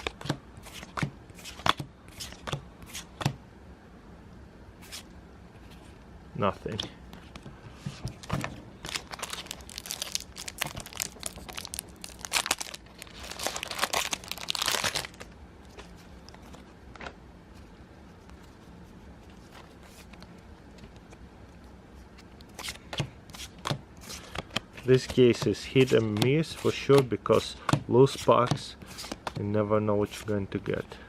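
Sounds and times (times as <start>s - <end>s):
faint handling sounds: 4.8s - 22.8s
foil wrapper crinkling and tearing: 8.8s - 15.3s.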